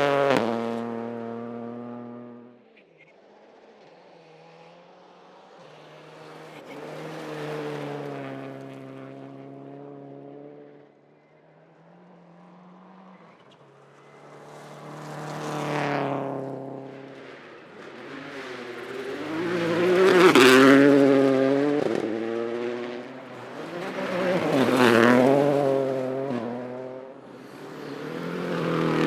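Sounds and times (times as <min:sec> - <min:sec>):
rally car engine passing: 0:00.0 - 0:02.7, 0:03.6 - 0:10.9, 0:11.8 - 0:29.0.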